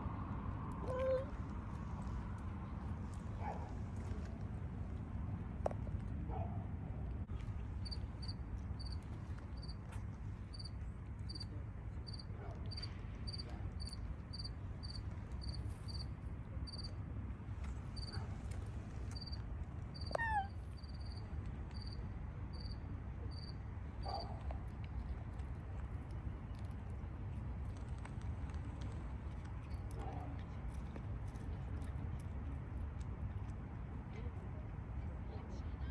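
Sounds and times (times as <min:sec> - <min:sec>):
low outdoor rumble: 0:00.0 - 0:35.9
cricket chirping: 0:07.8 - 0:09.0, 0:09.6 - 0:09.8, 0:10.5 - 0:10.7, 0:11.3 - 0:17.0, 0:18.0 - 0:18.2, 0:19.1 - 0:23.6.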